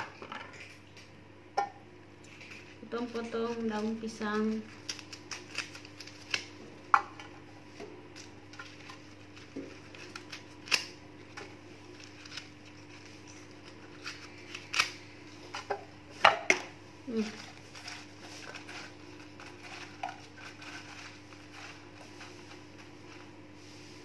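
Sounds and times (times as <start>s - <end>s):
dried leaves being cut: 2.5s - 6.6s, 8.1s - 11.0s, 11.8s - 15.8s, 17.1s - 23.4s.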